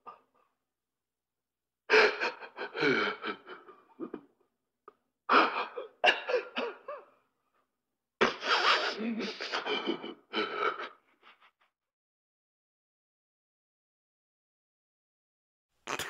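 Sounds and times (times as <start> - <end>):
person laughing: 8.2 - 11.6.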